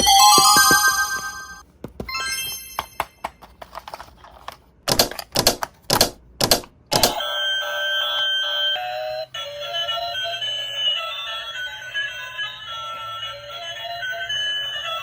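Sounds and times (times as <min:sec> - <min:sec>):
toy jingle tones: 0:00.0 - 0:03.3
sharp plastic clacks: 0:03.2 - 0:07.2.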